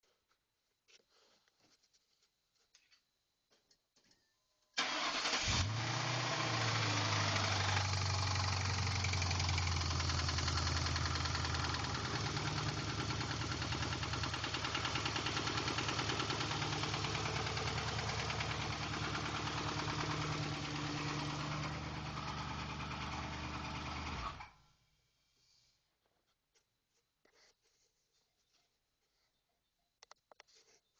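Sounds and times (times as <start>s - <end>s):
car engine knocking at idle: 6.7s - 24.3s.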